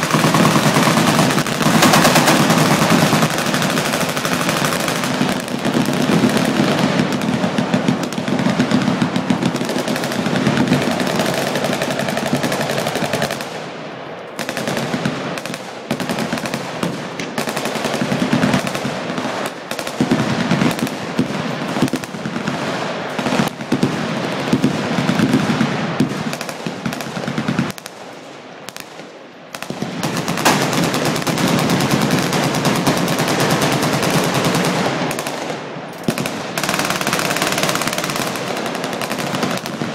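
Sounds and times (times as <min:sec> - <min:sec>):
machine guns firing: 0:00.0 - 0:13.7, 0:14.4 - 0:28.1, 0:28.7 - 0:39.9.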